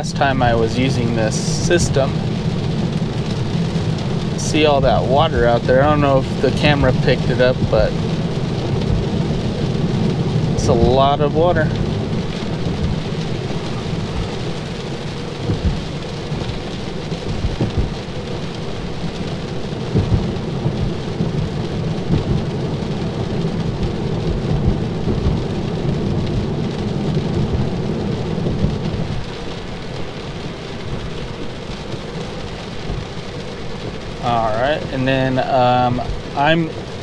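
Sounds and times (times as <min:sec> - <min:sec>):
rain on a car: 0:00.0 - 0:37.0
tyres on a wet road: 0:00.0 - 0:37.0
short thumps: 0:13.7 - 0:14.6, 0:15.4 - 0:15.9, 0:17.3 - 0:18.0.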